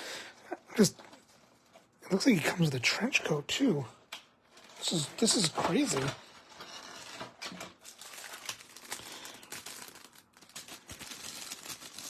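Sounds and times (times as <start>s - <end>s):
packaging crinkling and rustling: 4.4s - 12.0s.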